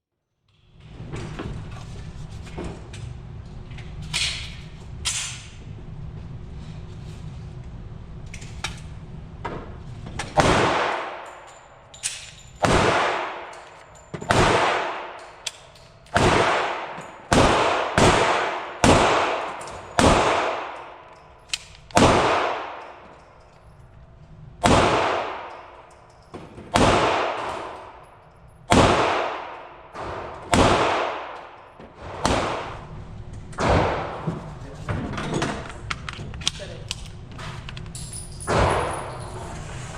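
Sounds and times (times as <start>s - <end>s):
pistol shots with ringing echo: 10.4s - 11.5s, 12.6s - 13.6s, 14.2s - 21.1s, 21.9s - 23.1s, 24.6s - 25.9s, 26.7s - 28.0s, 28.7s - 32.9s.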